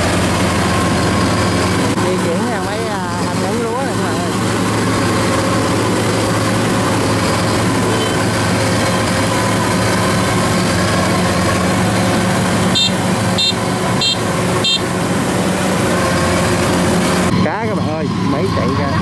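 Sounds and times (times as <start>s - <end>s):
harvester engine running: 0.0s - 19.0s
high electronic beeps: 7.8s - 8.3s.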